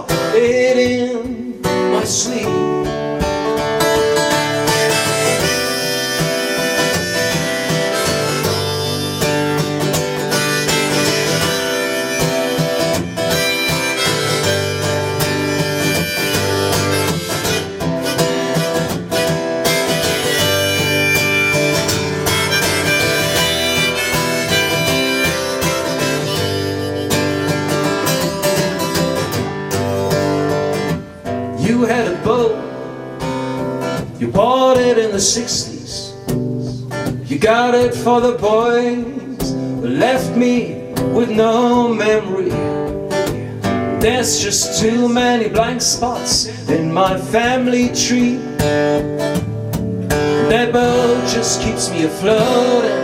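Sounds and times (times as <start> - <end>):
strummed acoustic guitar: 0.0 - 53.0
harmonica melody: 3.8 - 31.1.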